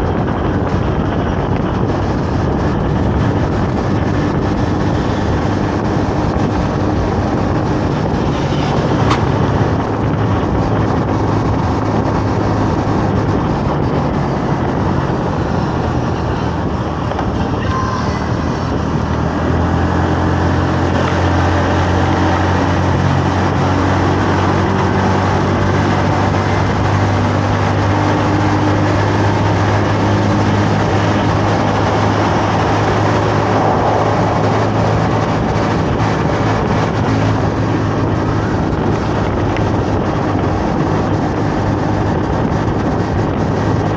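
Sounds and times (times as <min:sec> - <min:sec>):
motorcycle engine running: 0:00.0 - 0:17.6
rushing wind: 0:00.0 - 0:43.9.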